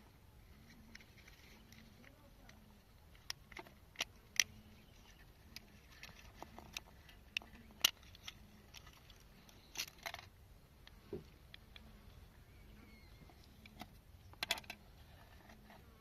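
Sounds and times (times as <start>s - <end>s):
scraping rustle: 0.6s - 2.6s
clicks of small metal parts: 1.7s - 11.8s, 13.5s - 14.8s.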